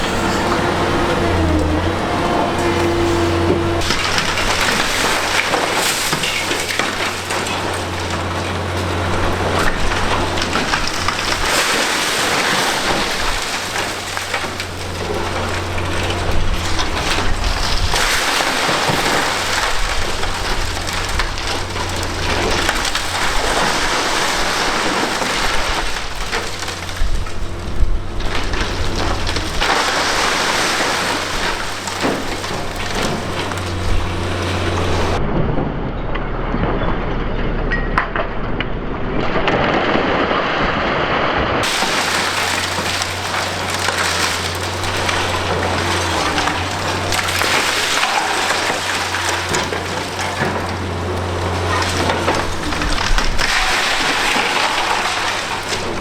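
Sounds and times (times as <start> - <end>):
concrete crushing and rubble pouring: 0.0 - 35.2, 37.7 - 56.0
excavator running under load: 0.0 - 56.0.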